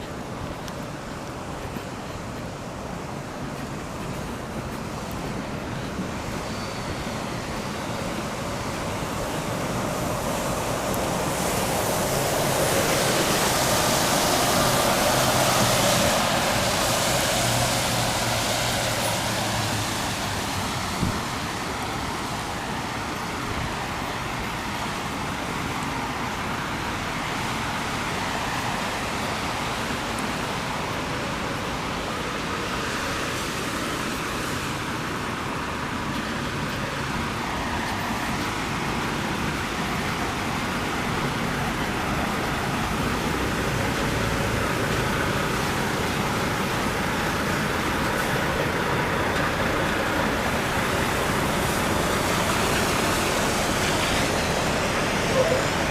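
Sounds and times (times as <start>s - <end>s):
tyre and engine noise: 0.0s - 55.9s
vehicle passing: 8.2s - 21.4s.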